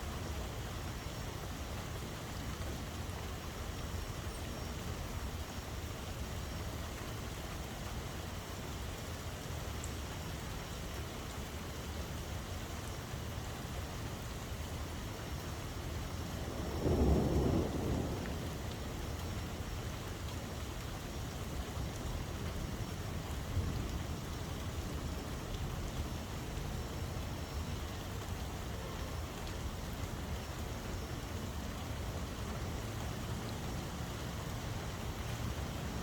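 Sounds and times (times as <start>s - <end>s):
steady rain falling: 0.0s - 36.0s
low rumble of thunder: 15.6s - 33.2s.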